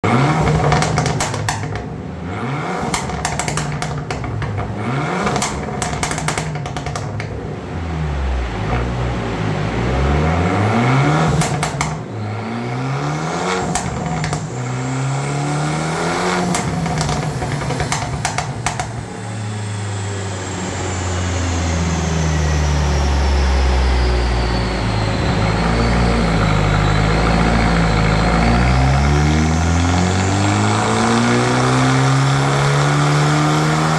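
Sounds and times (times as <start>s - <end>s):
exhaust crackles and pops: 0.0s - 20.1s, 23.5s - 33.9s
car engine revving: 0.0s - 33.9s
turbo whine: 0.0s - 33.9s.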